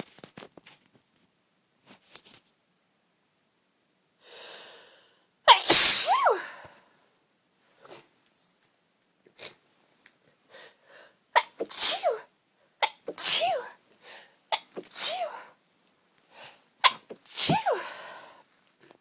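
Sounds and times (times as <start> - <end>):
person sneezing: 5.5 - 6.7, 11.4 - 13.8, 14.6 - 15.5, 16.8 - 18.1.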